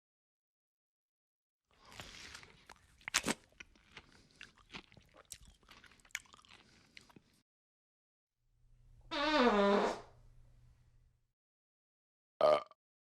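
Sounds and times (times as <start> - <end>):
crisp crunching and chewing: 1.8 - 7.4.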